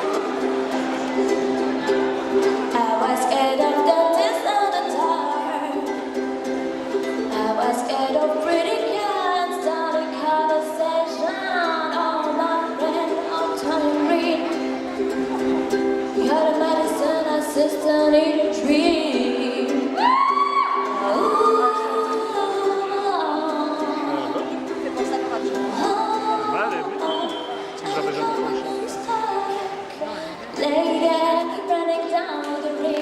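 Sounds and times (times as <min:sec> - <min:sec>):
strummed string instrument: 0:00.0 - 0:33.0
woman singing: 0:01.2 - 0:33.0.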